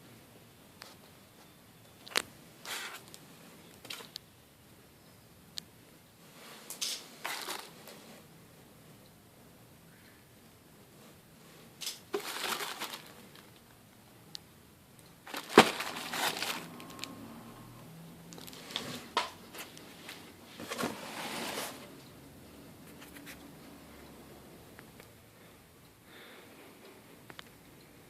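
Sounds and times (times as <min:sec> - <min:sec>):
plastic packaging crinkling: 0:07.2 - 0:07.8, 0:11.8 - 0:13.7, 0:15.2 - 0:17.1, 0:18.3 - 0:19.7.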